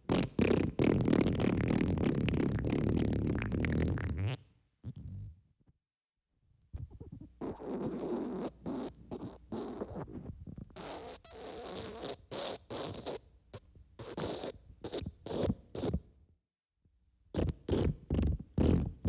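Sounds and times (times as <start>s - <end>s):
wet fart sputters: 0.1s - 4.4s.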